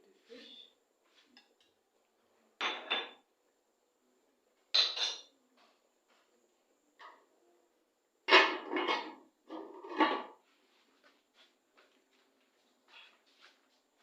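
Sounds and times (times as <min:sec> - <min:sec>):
pot and utensils clattering: 0:02.6 - 0:03.2, 0:04.7 - 0:05.3, 0:08.3 - 0:10.4.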